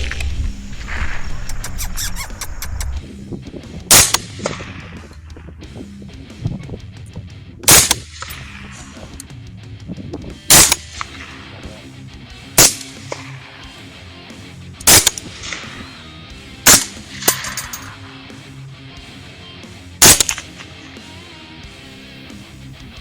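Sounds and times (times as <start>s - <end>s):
background guitar music: 0.0s - 23.0s
rifle shots: 3.9s - 5.2s, 7.6s - 9.2s, 10.5s - 11.7s, 12.5s - 13.6s, 14.8s - 16.0s, 16.6s - 18.1s, 20.0s - 20.8s.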